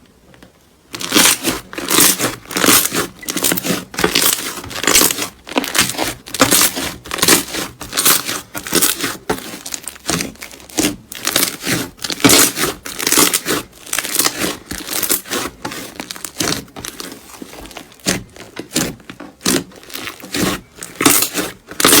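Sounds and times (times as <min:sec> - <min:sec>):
slime squeezed crackling: 0:00.9 - 0:22.0.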